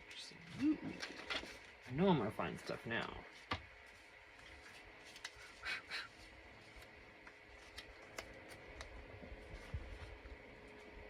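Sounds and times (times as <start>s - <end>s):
paper rustling: 6.6s - 10.2s.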